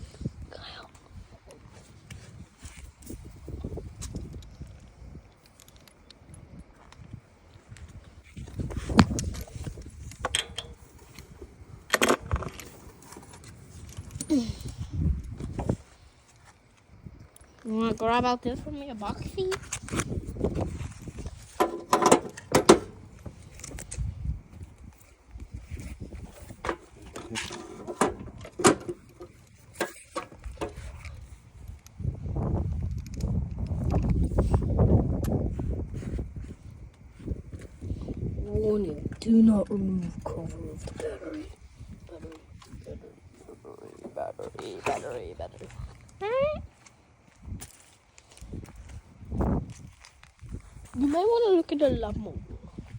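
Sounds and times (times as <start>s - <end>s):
metal tools clinking: 10.1s - 11.3s
hard objects knocking and clattering: 21.5s - 23.3s.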